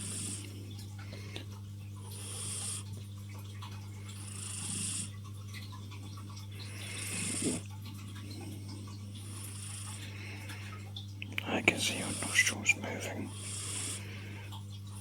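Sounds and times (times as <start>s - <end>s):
cat snoring: 0.0s - 0.6s, 2.1s - 3.0s, 4.2s - 5.2s, 6.7s - 7.7s, 9.2s - 10.1s, 11.8s - 14.3s.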